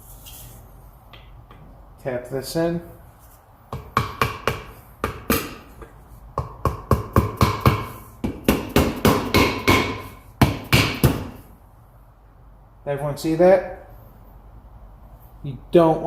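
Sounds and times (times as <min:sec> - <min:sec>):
hammer tapping on metal: 0:03.7 - 0:11.3.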